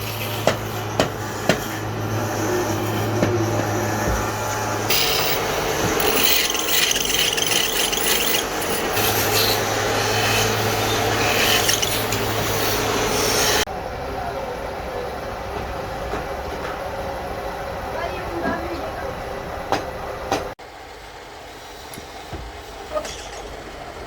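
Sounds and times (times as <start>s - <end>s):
tool rasping on wood: 4.9s - 12.8s.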